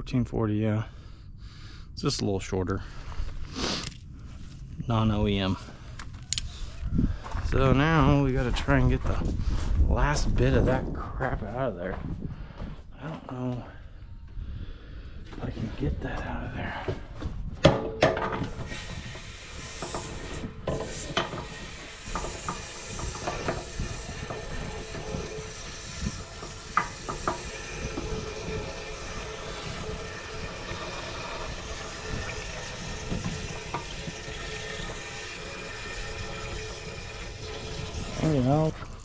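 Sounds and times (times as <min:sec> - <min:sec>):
steady hiss: 0:18.4 - 0:37.4.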